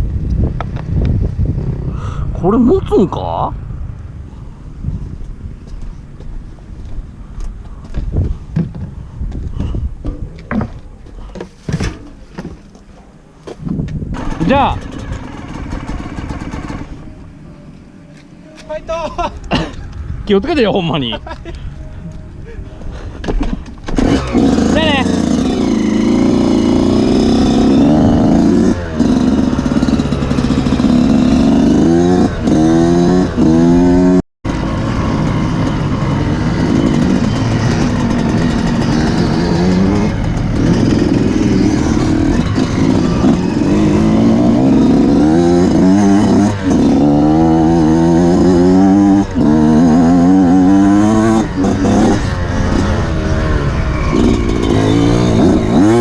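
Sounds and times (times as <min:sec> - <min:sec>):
motorcycle engine revving: 0:14.1 - 0:17.4, 0:23.8 - 0:56.0.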